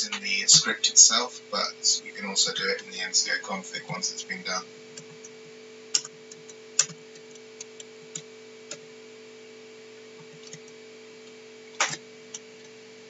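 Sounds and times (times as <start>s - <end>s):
faint steady hum: 0.0s - 13.0s
keyboard and mouse clicks: 6.0s - 8.8s, 10.2s - 10.8s, 11.8s - 12.8s.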